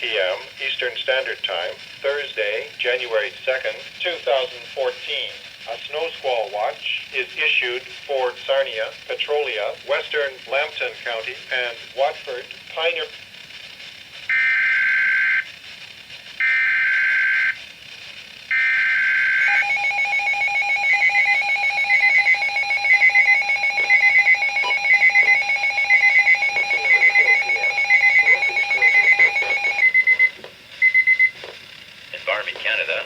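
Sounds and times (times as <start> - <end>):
rapid electronic beeping: 18.5 - 31.4
digital data header screech: 18.6 - 31.0
steady alert tone: 19.4 - 30.2.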